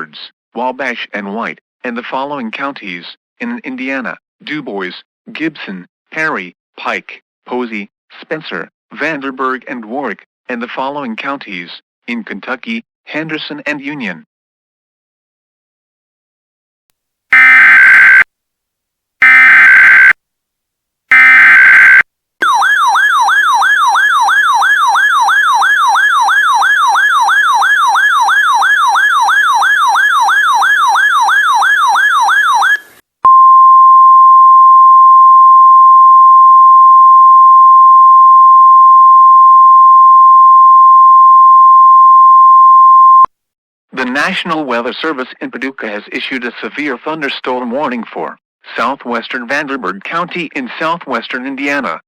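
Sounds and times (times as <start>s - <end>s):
electronic siren yelping: 17.4s - 18.2s, 19.2s - 20.2s, 21.1s - 33.0s
steady alarm tone: 19.2s - 20.2s, 21.1s - 32.9s.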